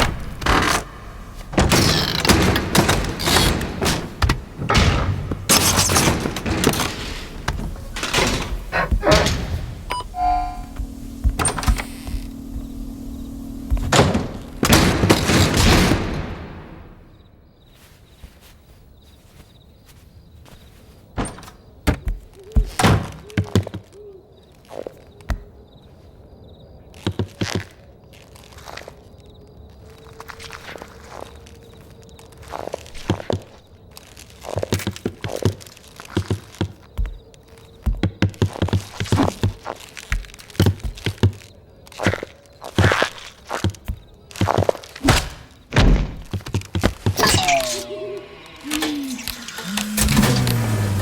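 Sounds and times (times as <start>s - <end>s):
cartoon thuds and slams: 1.6s - 9.9s
steady low hum: 7.1s - 17.1s
short pitched tone: 9.9s - 15.5s, 47.2s - 50.8s.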